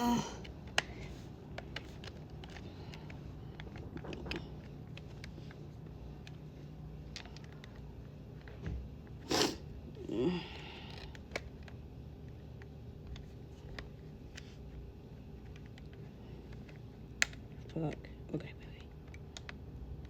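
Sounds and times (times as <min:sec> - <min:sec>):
person grunting: 0:00.0 - 0:00.4, 0:10.0 - 0:10.6
plastic parts clicking and tapping: 0:00.5 - 0:06.4.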